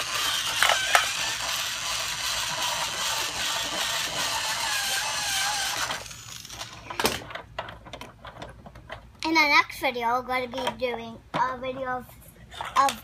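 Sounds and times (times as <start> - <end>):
toy screwdriver motor running: 0.0 - 7.1.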